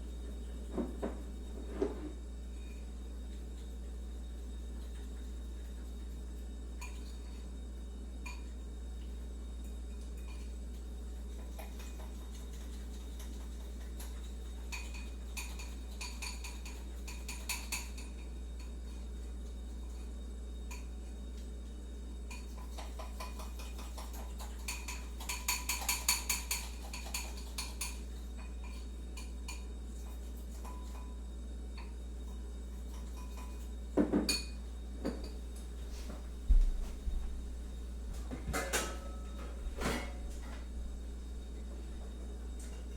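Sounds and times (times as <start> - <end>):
steady low hum: 0.0 - 42.9
crockery and cutlery clinking: 38.2 - 40.7.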